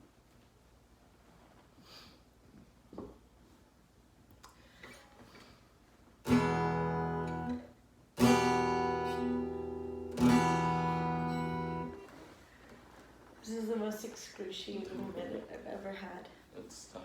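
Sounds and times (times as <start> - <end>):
strummed guitar chords: 6.2 - 12.1.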